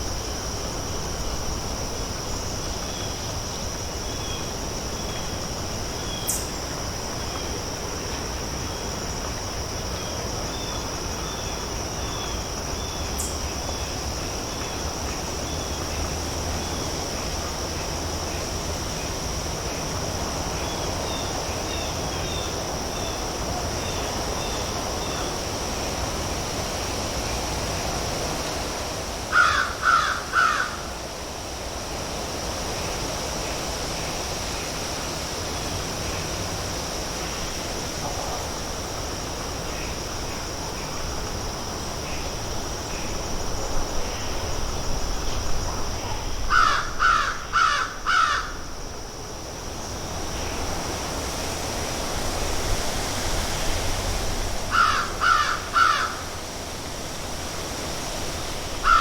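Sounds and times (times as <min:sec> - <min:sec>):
steady outdoor hiss: 0:00.0 - 0:59.0
crows cawing: 0:29.3 - 0:30.9, 0:46.5 - 0:48.6, 0:54.7 - 0:56.3.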